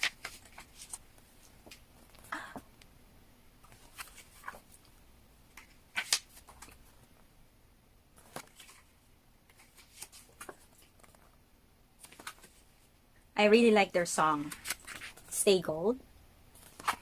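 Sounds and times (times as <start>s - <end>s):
paper pages rustling: 0.0s - 2.3s, 3.6s - 4.8s, 5.5s - 7.1s, 8.1s - 11.4s, 12.0s - 12.8s, 14.4s - 15.4s, 16.5s - 17.0s.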